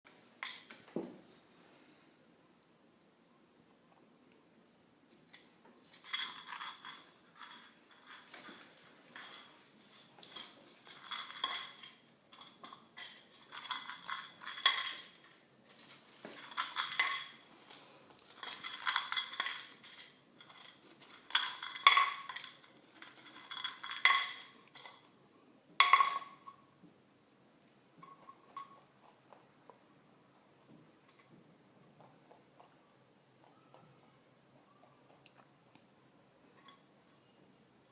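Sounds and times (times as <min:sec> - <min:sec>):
food bowl clinking and rattling: 0:05.3 - 0:25.2, 0:25.8 - 0:26.7, 0:28.0 - 0:29.3, 0:36.5 - 0:37.9.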